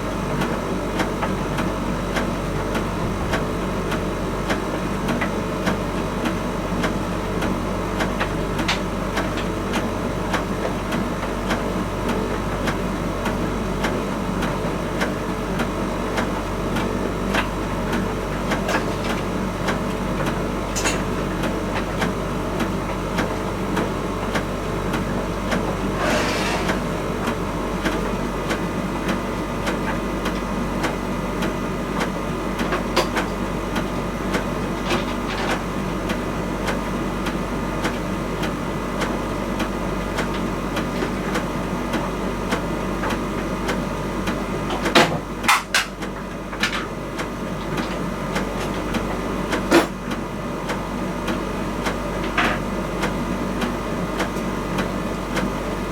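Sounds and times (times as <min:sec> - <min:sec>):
tumble dryer humming: 0:00.0 - 0:45.4
knocks inside dryer drum: 0:44.3 - 0:46.4.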